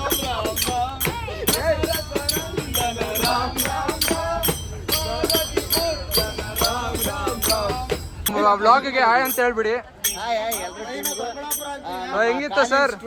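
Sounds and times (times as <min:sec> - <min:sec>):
jingling tambourine percussion: 0:00.0 - 0:08.4, 0:09.1 - 0:12.2
person singing: 0:00.0 - 0:08.6.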